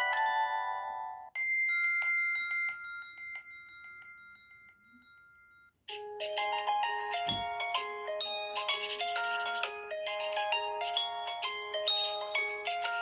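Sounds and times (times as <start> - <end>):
ringtone melody: 0.0 - 5.1, 5.9 - 13.0
bright chime-like tone: 0.0 - 5.8.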